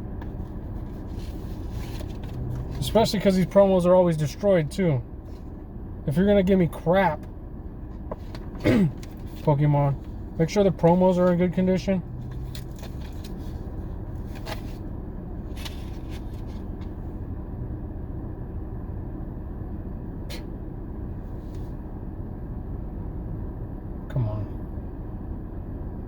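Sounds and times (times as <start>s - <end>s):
car interior rumble: 0.0s - 26.0s.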